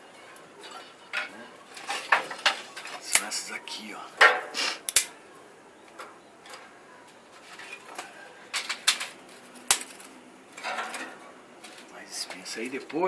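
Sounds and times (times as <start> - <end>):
sticks knocking against a stove: 4.2 - 5.1.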